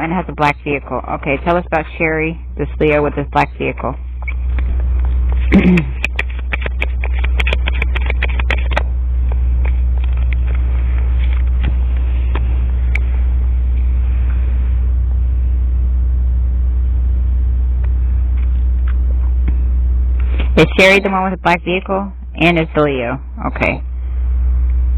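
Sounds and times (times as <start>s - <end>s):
steady low rumble: 0.0s - 24.9s
sharp clicks and taps: 5.8s - 8.9s.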